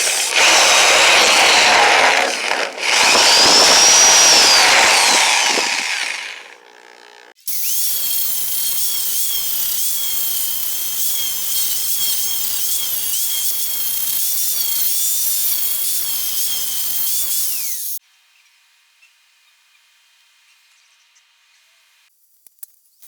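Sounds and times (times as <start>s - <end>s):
power grinder whining on metal: 0.0s - 18.0s.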